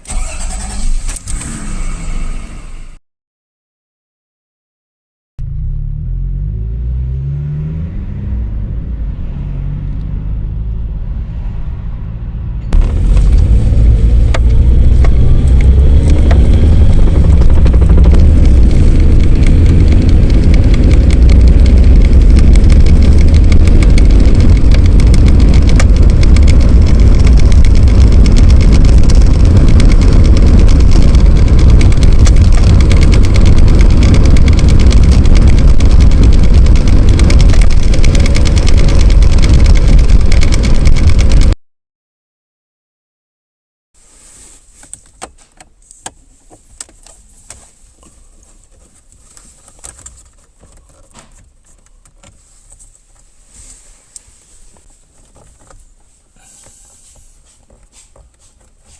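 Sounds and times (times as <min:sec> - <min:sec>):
car engine accelerating: 0:00.0 - 0:03.0, 0:05.4 - 0:41.6
road noise: 0:00.0 - 0:03.0, 0:05.4 - 0:41.6, 0:44.0 - 0:58.9.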